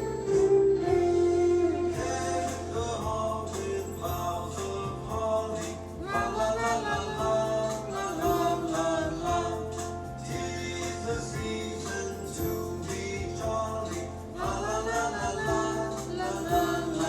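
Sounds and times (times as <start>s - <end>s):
sleigh bells ringing: 0.0s - 17.0s
choir singing carol: 0.2s - 17.0s.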